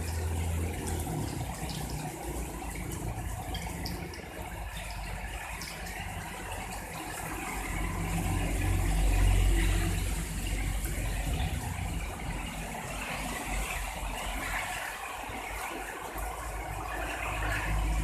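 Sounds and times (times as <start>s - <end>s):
heavy rain: 0.0s - 18.0s.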